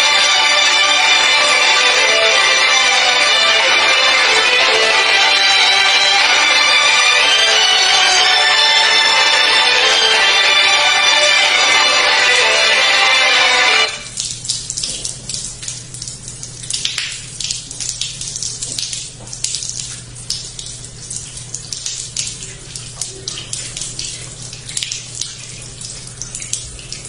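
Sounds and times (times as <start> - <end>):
music: 0.0 - 14.1
running water splashing: 0.0 - 27.0.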